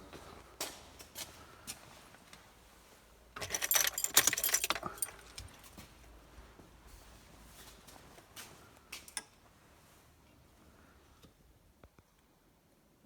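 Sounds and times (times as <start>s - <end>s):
car keys jangling: 3.4s - 5.8s.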